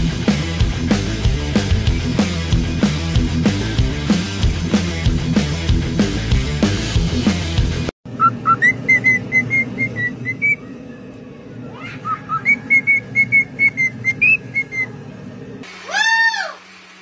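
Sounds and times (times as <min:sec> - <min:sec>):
parrot whistling a tune: 0:08.2 - 0:10.6, 0:12.0 - 0:15.0.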